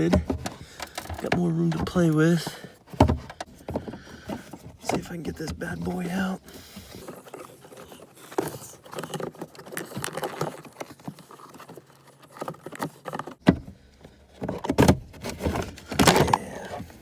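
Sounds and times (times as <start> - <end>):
plastic scraping and rattling: 0.0 - 17.0.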